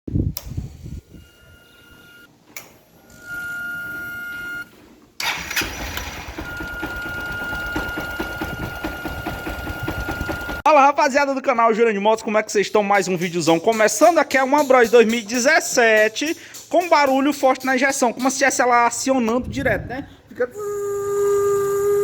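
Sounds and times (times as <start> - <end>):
high-pitched fuel system whine: 5.3 - 10.6
motorcycle engine running: 5.8 - 10.6.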